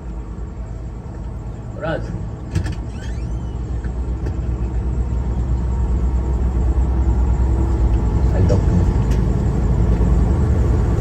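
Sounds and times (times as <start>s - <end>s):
road noise: 0.0s - 11.0s
truck engine rumble: 0.0s - 11.0s.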